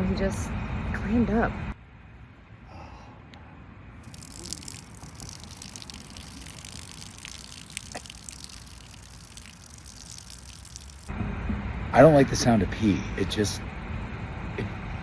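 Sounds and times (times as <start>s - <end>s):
urine trickling and splashing: 4.0s - 11.1s.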